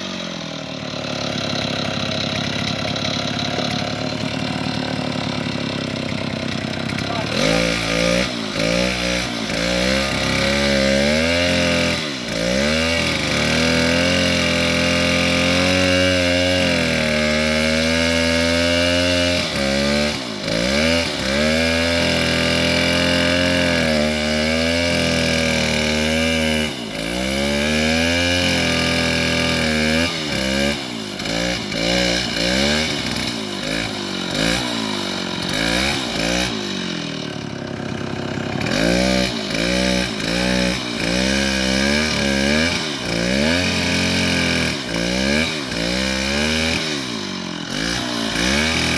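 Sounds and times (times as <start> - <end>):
bulldozer engine running: 0.0 - 15.6, 31.1 - 48.9.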